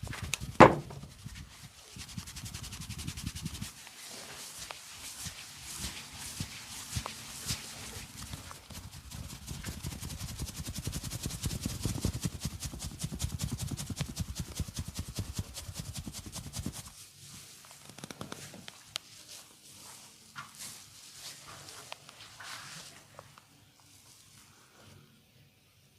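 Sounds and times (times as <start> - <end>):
hands beating on body: 0.6 - 1.0.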